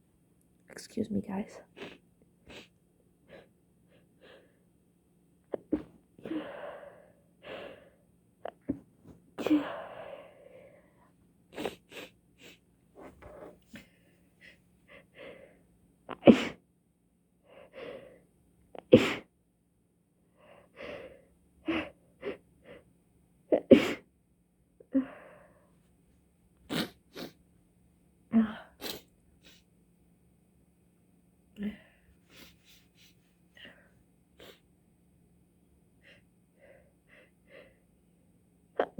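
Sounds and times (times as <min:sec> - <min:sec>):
person speaking: 0:00.7 - 0:01.6
breaths: 0:06.2 - 0:08.0, 0:09.4 - 0:11.1, 0:13.7 - 0:15.6, 0:24.9 - 0:25.8, 0:31.6 - 0:34.0, 0:36.0 - 0:37.9
person sneezing: 0:16.2 - 0:16.6, 0:19.0 - 0:19.2, 0:23.6 - 0:24.0.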